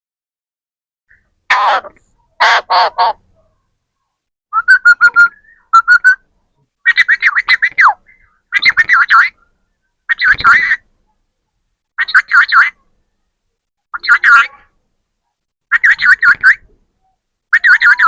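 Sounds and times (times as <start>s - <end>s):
parrot squawking and chattering: 1.1s - 3.5s, 6.8s - 9.4s, 10.1s - 10.9s, 12.0s - 12.9s, 14.0s - 14.7s, 15.7s - 16.7s, 17.5s - 18.0s.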